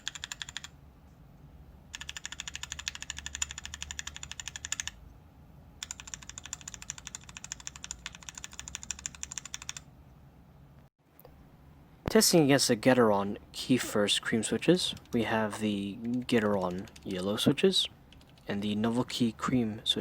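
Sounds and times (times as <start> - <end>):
mechanical keyboard typing: 0.0 - 0.7, 1.9 - 5.0, 5.8 - 9.8, 14.8 - 17.5, 18.1 - 18.5.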